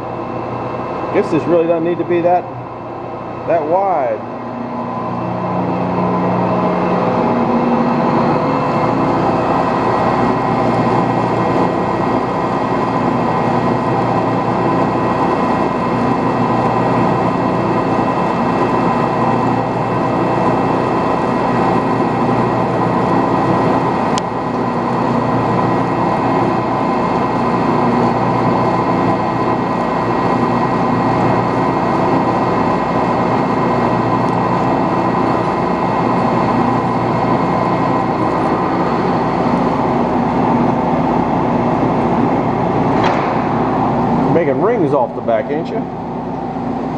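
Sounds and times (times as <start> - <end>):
metal lathe cutting with whine: 0.0 - 46.9
sharp click: 43.0 - 43.6.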